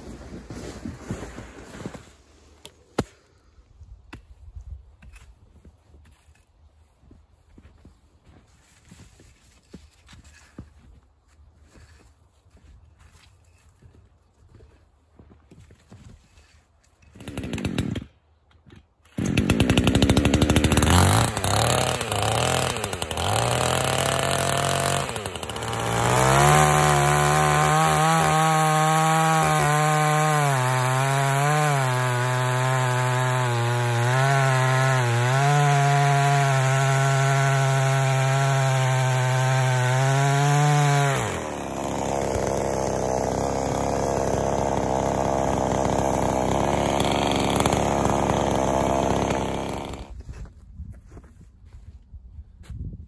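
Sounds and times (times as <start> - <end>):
chainsaw cutting wood: 16.4 - 50.3.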